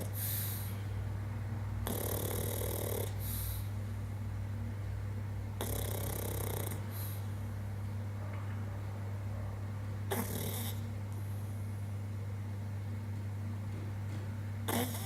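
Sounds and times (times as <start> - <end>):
dog snoring: 0.0 - 0.7, 1.8 - 3.7, 5.6 - 7.3, 10.1 - 11.5, 14.7 - 15.0.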